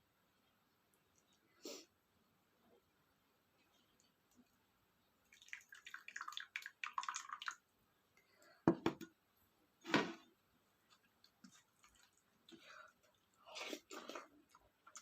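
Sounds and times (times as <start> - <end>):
moist crackles of mixing food: 10.5 - 15.0.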